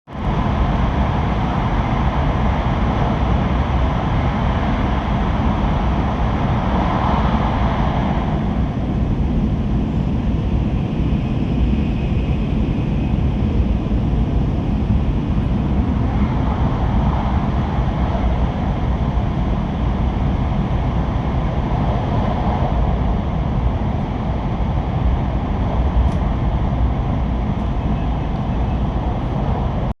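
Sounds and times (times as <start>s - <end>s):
train deep rumble: 0.1s - 30.0s.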